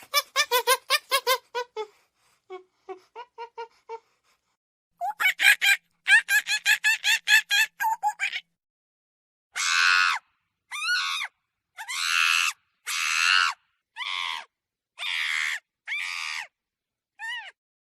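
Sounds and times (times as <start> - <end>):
monkey screaming: 9.6 - 16.5.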